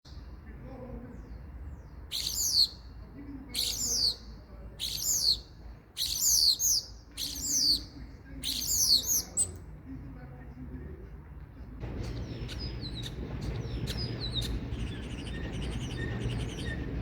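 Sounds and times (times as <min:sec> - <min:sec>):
starling calling: 0:01.2 - 0:09.6, 0:11.8 - 0:17.0.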